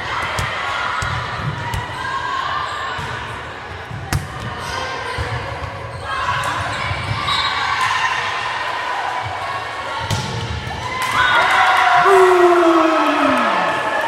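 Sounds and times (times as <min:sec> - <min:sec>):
voices of players and spectators: 0:00.0 - 0:14.0.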